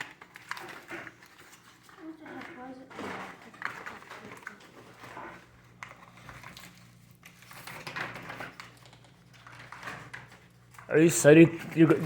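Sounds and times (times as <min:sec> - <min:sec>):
packaging rustling: 0:00.0 - 0:12.0.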